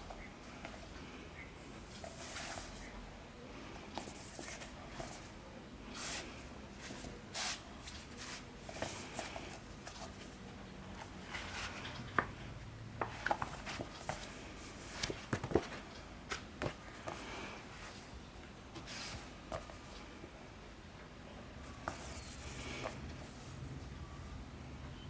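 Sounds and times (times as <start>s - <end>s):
book pages rustling: 6.0s - 10.4s, 13.0s - 18.1s.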